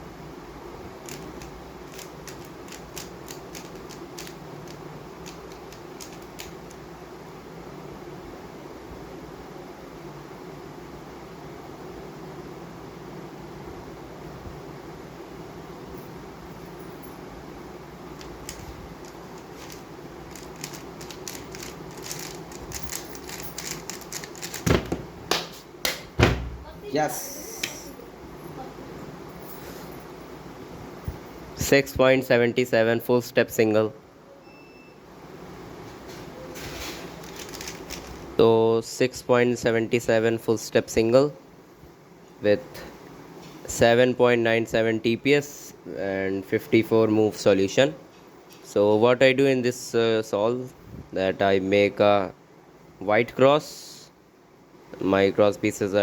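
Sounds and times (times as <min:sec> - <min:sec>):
steady low hum: 0:00.0 - 0:56.0
puzzle cube plastic clicks: 0:01.0 - 0:06.8, 0:18.2 - 0:24.7, 0:37.2 - 0:38.2
loud thumps: 0:24.5 - 0:26.6.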